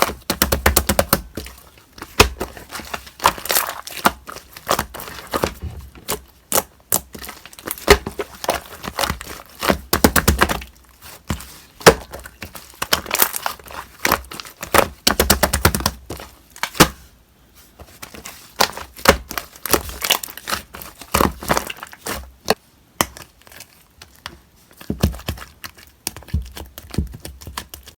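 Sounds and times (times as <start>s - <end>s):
slime crackling and popping: 0.0s - 5.5s, 6.1s - 10.8s, 11.8s - 17.0s, 18.6s - 24.2s.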